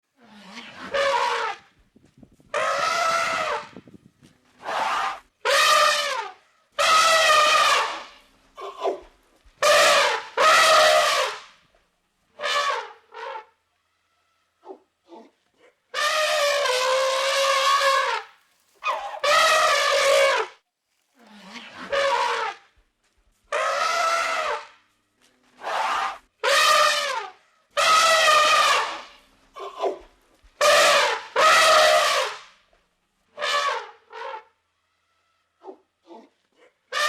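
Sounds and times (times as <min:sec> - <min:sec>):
elephant trumpeting: 0:00.3 - 0:01.7, 0:02.5 - 0:03.8, 0:04.6 - 0:09.0, 0:09.6 - 0:11.4, 0:12.4 - 0:14.8, 0:15.9 - 0:20.6, 0:21.3 - 0:22.7, 0:23.5 - 0:24.7, 0:25.6 - 0:30.0, 0:30.6 - 0:32.4, 0:33.4 - 0:34.5.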